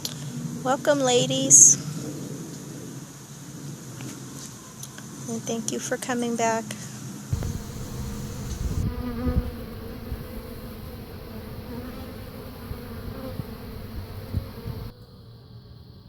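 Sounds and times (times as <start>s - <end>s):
low thumps on microphone: 7.3s - 12.0s
bee swarm buzzing: 7.3s - 14.9s.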